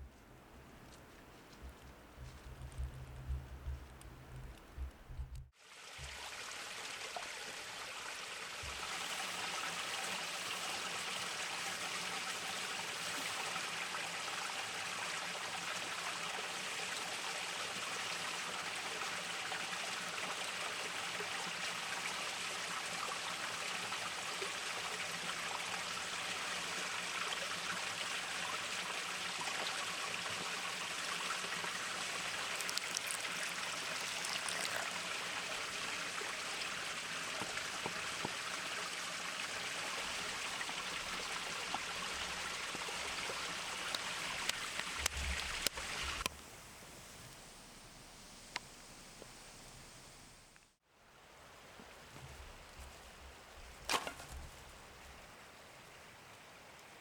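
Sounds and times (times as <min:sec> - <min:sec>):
running water rushing: 0:05.6 - 0:46.3.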